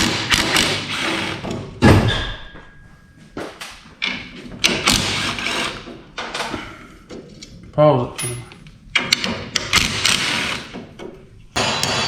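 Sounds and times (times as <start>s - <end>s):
knocks and clanks: 0.0s - 7.4s
heavy thud: 1.8s - 2.9s.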